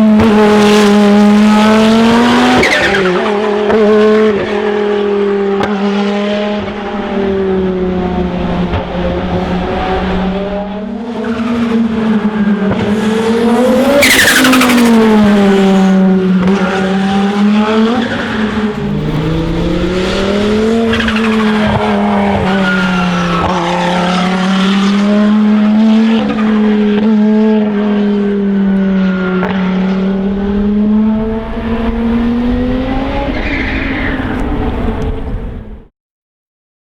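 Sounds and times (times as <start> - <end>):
race car engine revving: 0.0 - 35.8.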